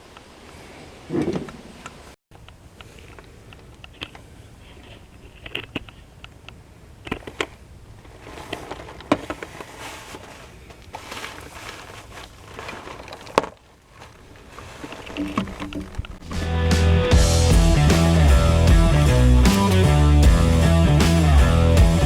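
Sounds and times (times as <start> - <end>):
rustling: 0.0 - 16.9
handling clicks and knocks: 2.4 - 16.4.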